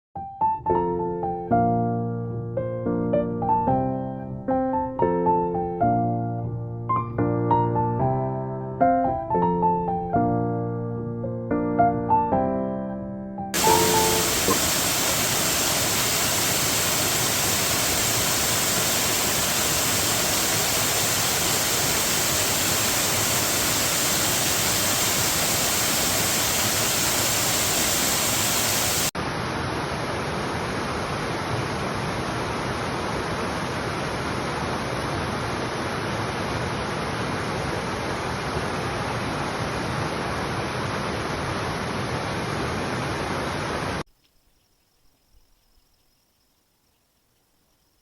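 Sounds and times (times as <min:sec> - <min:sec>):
rushing water roar: 0:13.6 - 0:44.0.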